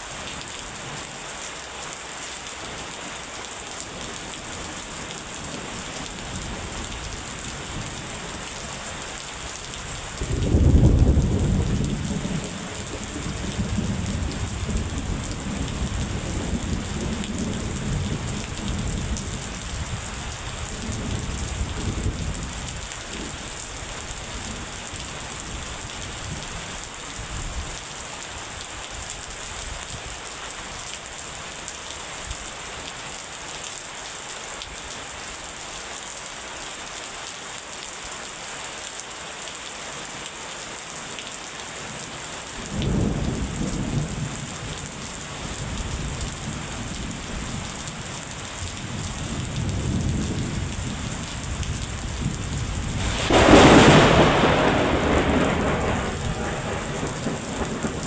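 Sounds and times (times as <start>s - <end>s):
steady rain: 0.0s - 58.0s
rolling thunder: 10.1s - 23.4s, 48.8s - 58.0s.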